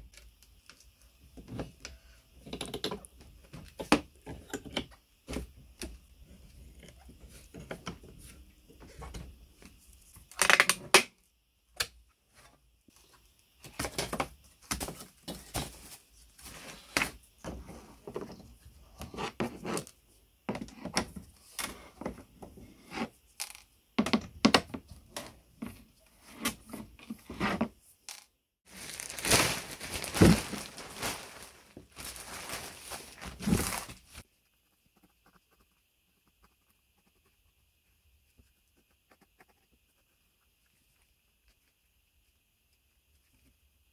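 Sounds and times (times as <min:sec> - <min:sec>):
objects knocking and clicking: 0:23.4 - 0:25.3.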